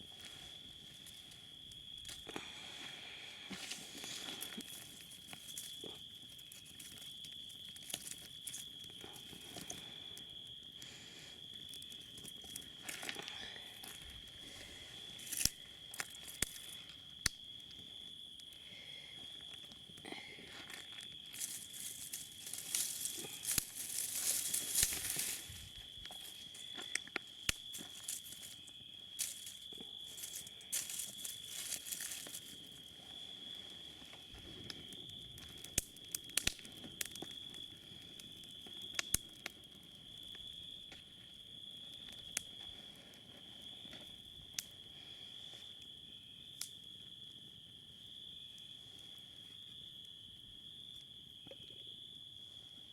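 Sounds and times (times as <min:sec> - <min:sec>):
campfire crackling: 0:00.0 - 0:52.9
sharp snaps and pops: 0:03.6 - 0:09.9, 0:15.2 - 0:18.6, 0:20.6 - 0:32.6, 0:34.6 - 0:39.6.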